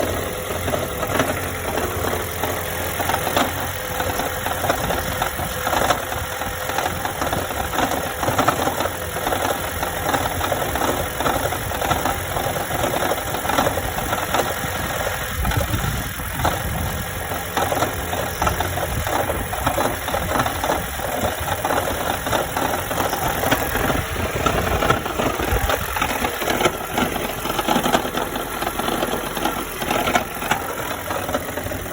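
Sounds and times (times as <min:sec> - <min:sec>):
car engine running: 0:00.0 - 0:31.9
fast irregular knocking: 0:00.0 - 0:31.9.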